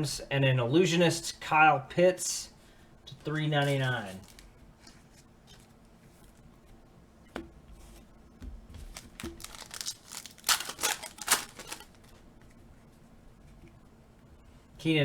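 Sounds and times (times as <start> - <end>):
wrapper crinkling and tearing: 3.6 - 4.5, 8.8 - 12.1.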